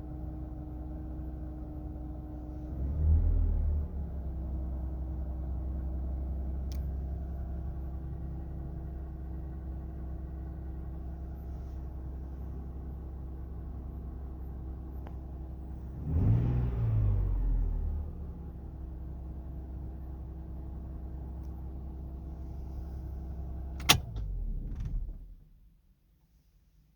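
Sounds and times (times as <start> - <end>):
car engine idling with whine: 0.0 - 25.7
engine revving: 2.7 - 4.2, 15.8 - 18.8.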